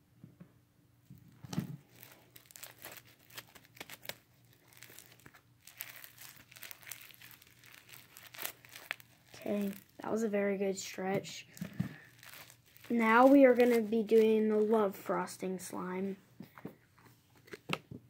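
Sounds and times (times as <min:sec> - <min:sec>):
slime crackling and tearing: 0:01.4 - 0:14.8.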